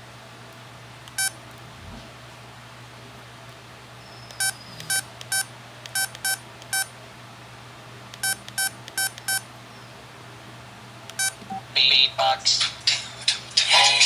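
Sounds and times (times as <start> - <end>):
mobile phone beeps: 4.4 - 6.9, 8.2 - 9.4, 11.2 - 11.6.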